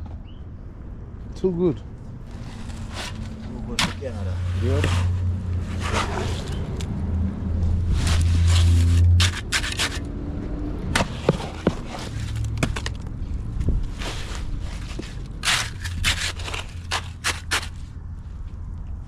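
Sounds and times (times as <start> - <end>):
shovel scraping gravel: 2.3 - 6.9, 7.8 - 10.1, 10.9 - 13.0, 13.9 - 17.9.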